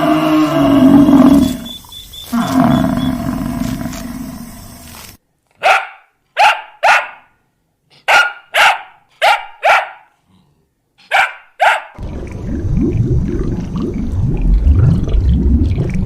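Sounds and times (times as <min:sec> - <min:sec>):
dog barking: 0:05.6 - 0:07.4, 0:08.0 - 0:10.2, 0:11.0 - 0:12.0
low sound: 0:12.0 - 0:16.0.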